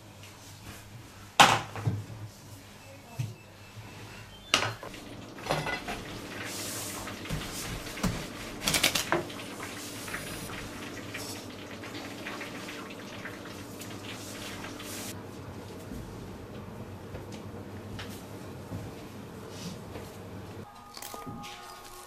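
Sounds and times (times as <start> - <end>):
dishes and utensils clinking: 4.6 - 6.5, 20.7 - 22.0.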